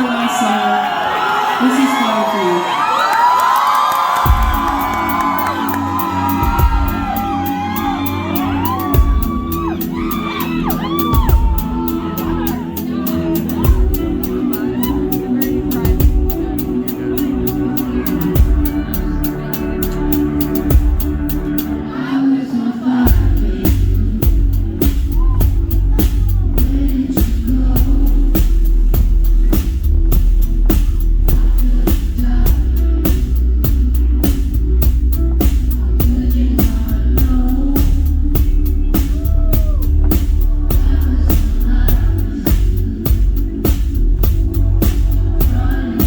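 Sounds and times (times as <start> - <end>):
audience whooping and shouting: 0.0 - 16.1, 38.9 - 40.6
live band playing: 4.1 - 22.1, 23.1 - 46.0.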